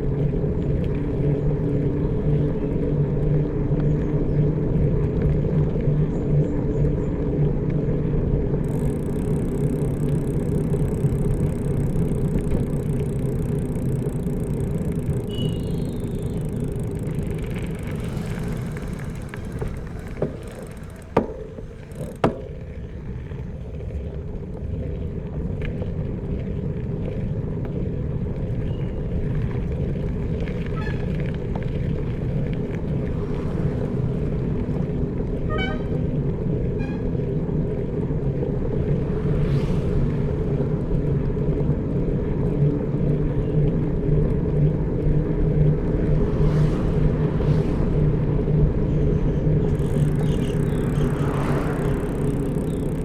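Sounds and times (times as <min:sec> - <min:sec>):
bicycle tyres rumbling on road: 0:00.0 - 0:53.0
wind: 0:00.0 - 0:53.0
faint bird chirps: 0:15.3 - 0:16.6.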